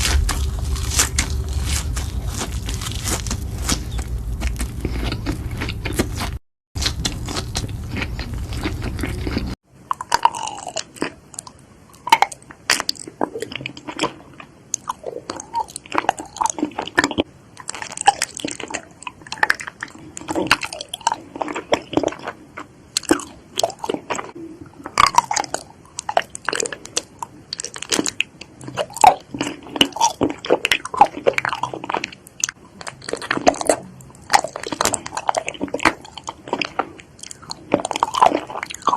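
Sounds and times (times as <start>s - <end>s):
dense crackling noise: 0.0s - 10.2s
person chewing crisp food: 0.0s - 38.9s.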